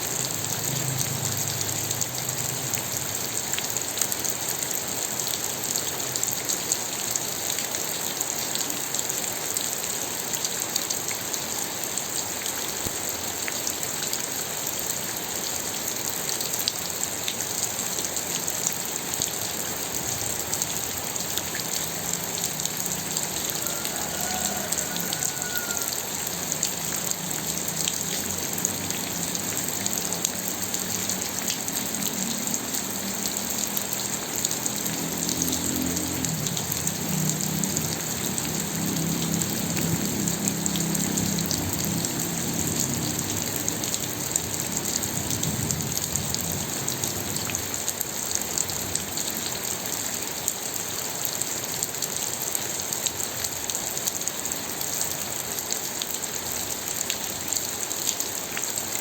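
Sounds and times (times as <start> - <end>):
rain drops ticking: 0.0 - 59.0.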